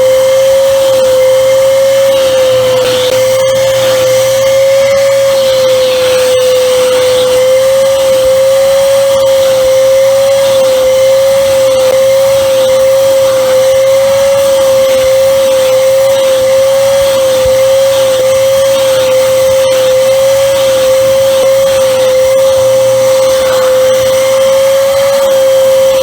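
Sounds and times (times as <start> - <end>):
handheld vacuum cleaner whine: 0.0 - 26.0.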